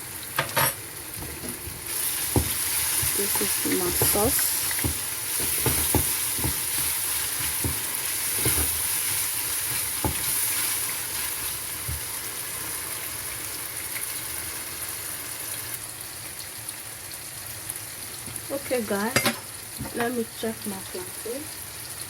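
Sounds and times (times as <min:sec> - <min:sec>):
food sizzling in oil: 0:00.0 - 0:22.0
utensil knocking on pan: 0:02.3 - 0:08.8, 0:09.7 - 0:10.4.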